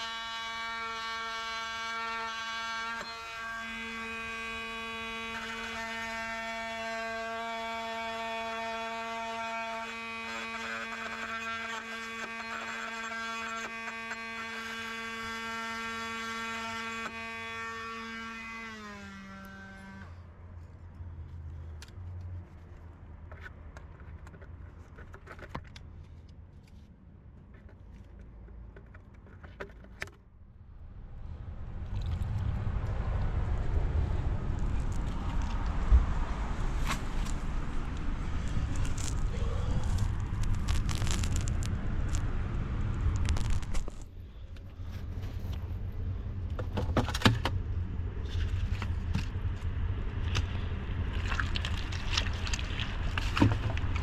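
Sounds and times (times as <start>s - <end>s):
clicks and handling noise: 20.6s - 30.3s, 36.8s - 42.3s, 42.9s - 45.8s.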